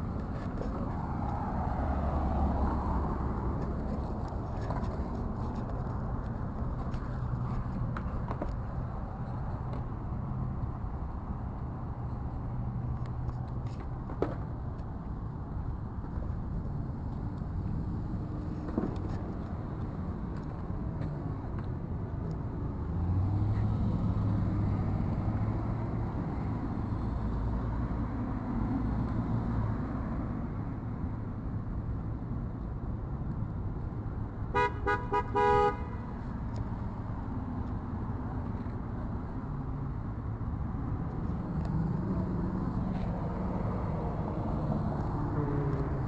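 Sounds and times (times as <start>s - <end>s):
road traffic passing: 0.0s - 46.0s
car horn toots: 34.6s - 36.0s.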